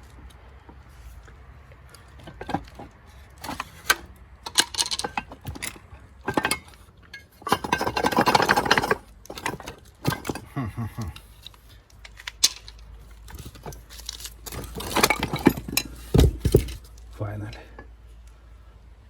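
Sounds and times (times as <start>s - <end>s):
metal parts clinking: 2.2s - 17.1s.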